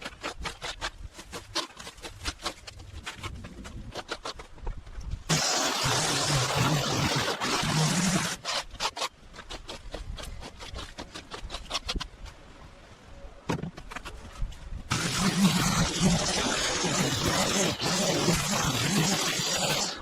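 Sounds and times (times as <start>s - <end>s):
power tool hissing and humming: 5.3s - 8.4s, 14.9s - 20.0s
scraping: 13.6s - 20.0s.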